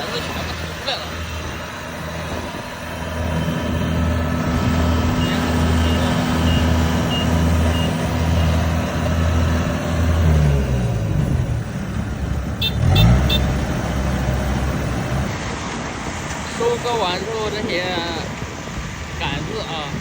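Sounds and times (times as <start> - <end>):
reverse warning beeps: 0.0 - 11.6
harvester engine humming: 0.0 - 20.0.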